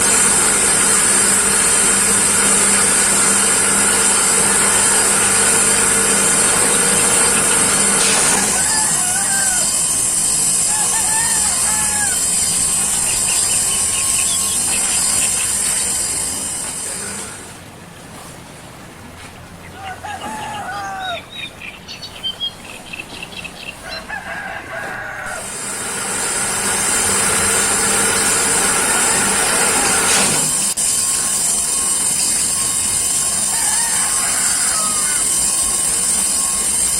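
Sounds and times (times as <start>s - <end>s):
electric machine motor hum: 0.0s - 19.0s, 19.8s - 36.9s
rooster crowing: 2.4s - 15.0s, 19.7s - 21.5s, 23.6s - 30.4s, 33.1s - 36.8s
birds chirping: 6.5s - 17.8s, 18.4s - 25.4s.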